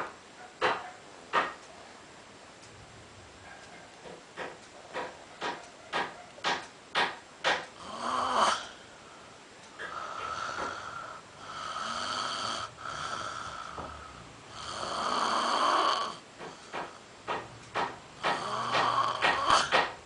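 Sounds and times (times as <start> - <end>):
man snoring: 7.8 - 8.8, 9.8 - 16.2, 18.2 - 19.9.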